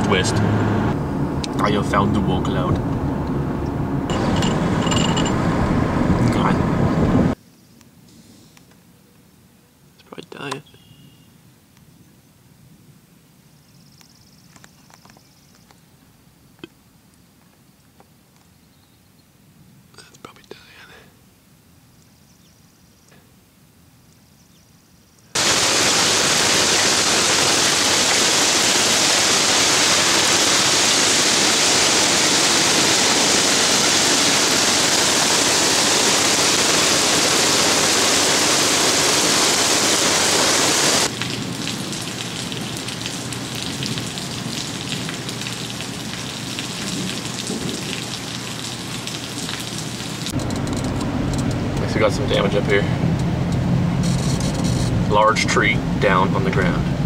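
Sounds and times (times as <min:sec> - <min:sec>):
heavy rain and hail: 0:04.1 - 0:05.5, 0:25.4 - 0:50.8.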